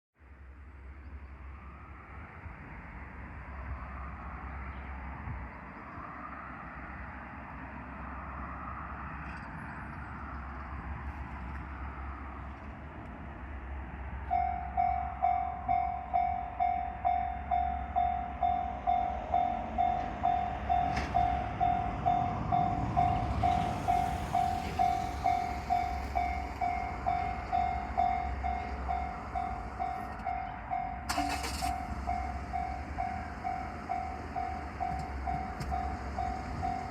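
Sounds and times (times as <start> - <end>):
level crossing warning bell: 14.2 - 36.9.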